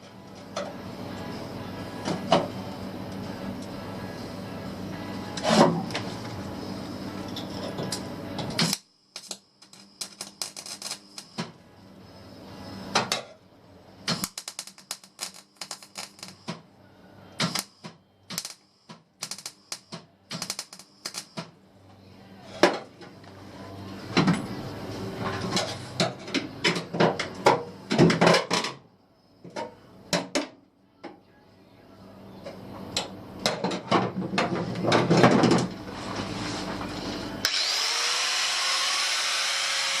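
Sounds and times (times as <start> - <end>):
steady welder hum: 0.0 - 26.7, 35.7 - 40.0
welder crackling: 8.5 - 11.6, 14.0 - 16.6, 17.4 - 21.5.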